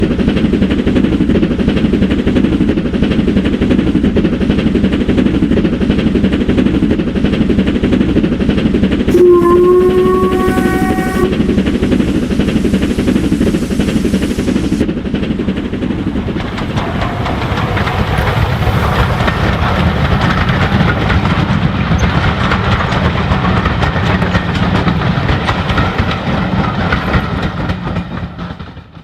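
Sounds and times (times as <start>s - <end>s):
steam locomotive chuffing: 0.0s - 29.0s
train whistle blast: 9.1s - 14.8s.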